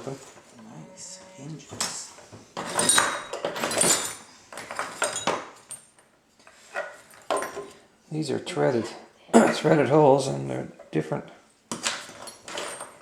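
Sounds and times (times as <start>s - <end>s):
metal hardware clinking and scraping: 2.6s - 5.9s.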